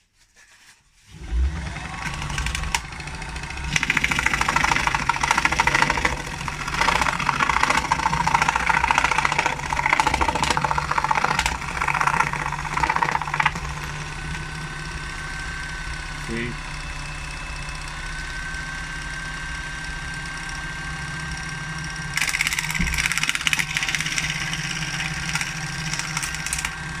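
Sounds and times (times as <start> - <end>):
jigsaw blade rasping through wood: 1.1 - 15.4, 22.2 - 27.0
motor humming with thin whine: 1.1 - 27.0.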